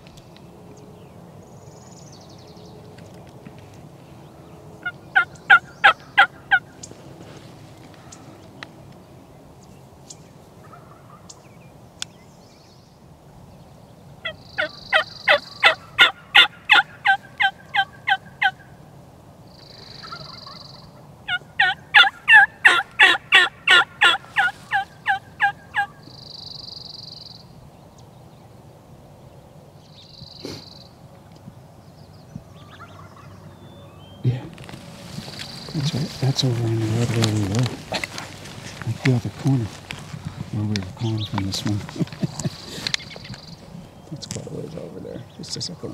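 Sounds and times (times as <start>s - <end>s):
wild turkey yelping: 4.8s - 7.0s, 10.6s - 11.4s, 14.2s - 18.7s, 19.8s - 26.3s, 32.6s - 36.2s, 41.0s - 44.2s.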